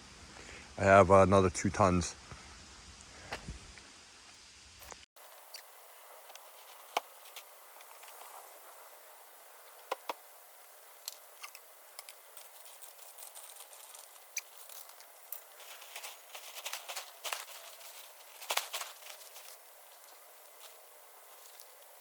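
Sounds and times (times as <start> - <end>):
fabric crackling and rustling: 11.2 - 22.0.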